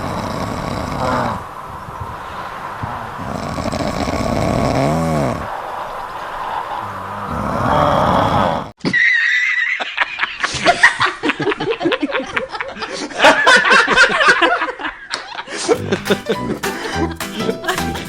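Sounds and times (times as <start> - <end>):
people laughing: 9.0 - 18.0
background music: 15.7 - 18.0
low music beat: 15.7 - 18.0.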